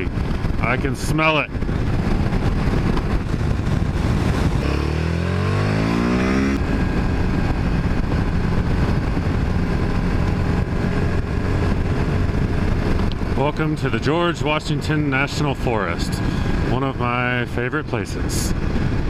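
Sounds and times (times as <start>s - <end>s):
motorcycle engine revving: 1.7s - 13.4s.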